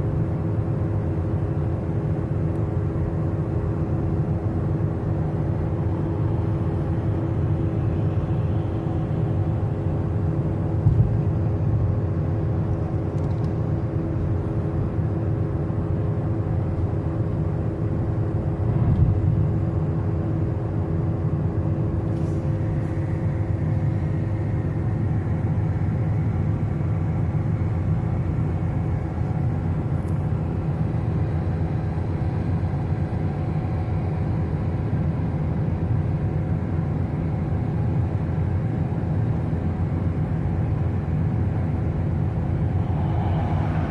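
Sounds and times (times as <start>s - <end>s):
faint steady hum: 0.0s - 43.9s
vehicle driving on highway: 0.0s - 43.9s.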